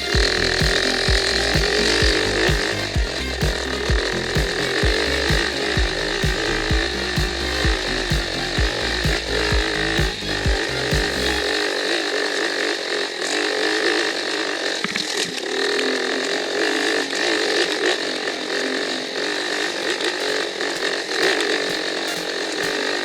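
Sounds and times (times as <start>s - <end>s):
motorcycle engine revving: 0.0s - 12.6s.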